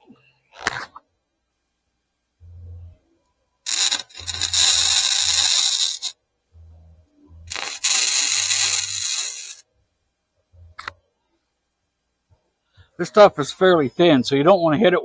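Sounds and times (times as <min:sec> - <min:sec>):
welder low hum: 0:02.4 - 0:03.0, 0:03.7 - 0:09.6
arc welding crackling: 0:03.6 - 0:06.2, 0:07.5 - 0:09.7.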